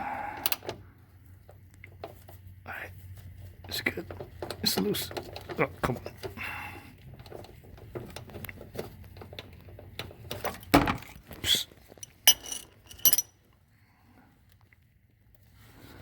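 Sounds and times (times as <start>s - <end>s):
wrench clinking on metal fitting: 12.0s - 13.4s.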